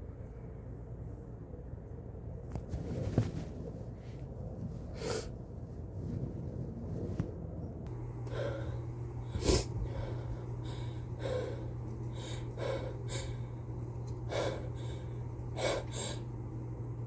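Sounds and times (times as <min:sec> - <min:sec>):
sharp sniffing and gasping breaths: 0:08.2 - 0:16.4.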